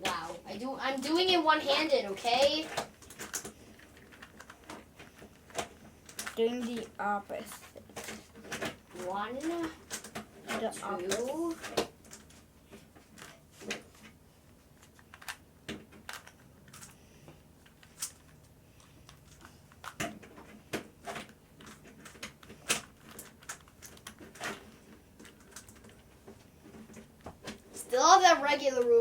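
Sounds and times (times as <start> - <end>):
plastic puzzle cube clicking: 14.8 - 17.0, 17.6 - 24.5.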